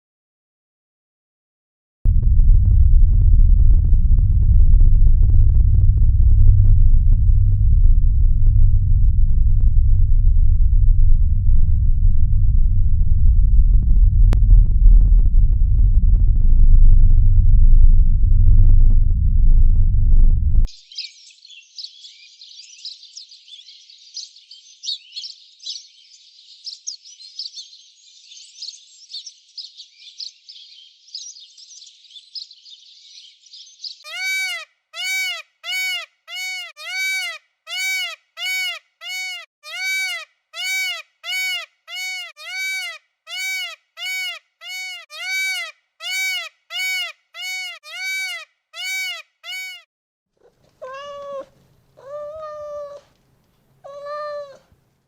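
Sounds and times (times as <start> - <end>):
many birds chirping: 20.8 - 34.6
different animal call: 34.0 - 49.9, 50.8 - 53.0, 53.8 - 54.7
loud rising and falling call: 34.1 - 49.9.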